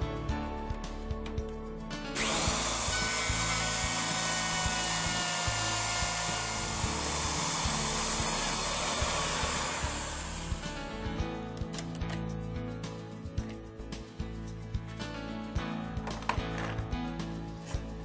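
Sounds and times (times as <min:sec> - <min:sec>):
electric router cutting wood: 0:02.2 - 0:10.8.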